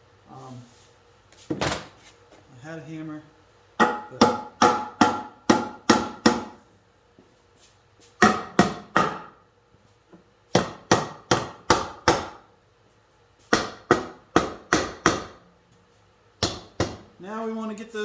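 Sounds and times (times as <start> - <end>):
hammer tapping metal: 3.8 - 6.6.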